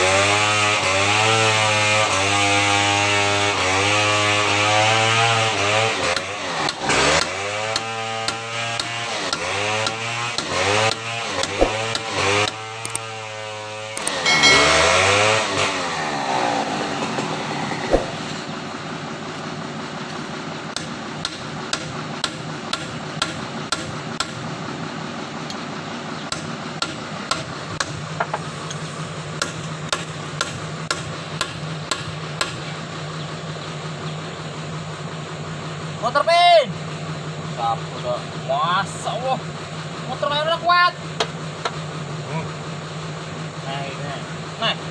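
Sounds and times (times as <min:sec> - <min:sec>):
engine hum: 0:00.0 - 0:44.9
hammer blows: 0:09.8 - 0:12.6, 0:14.0 - 0:18.5
voices: 0:37.4 - 0:41.0, 0:43.5 - 0:44.9.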